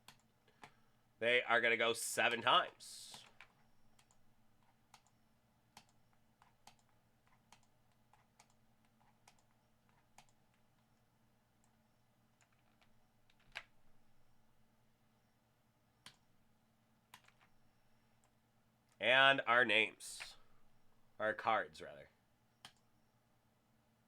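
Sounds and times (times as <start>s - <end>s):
computer mouse clicks: 0.0s - 0.8s, 2.6s - 11.0s, 16.0s - 16.3s, 17.1s - 17.5s, 22.6s - 22.9s
faint low hum: 0.0s - 24.0s.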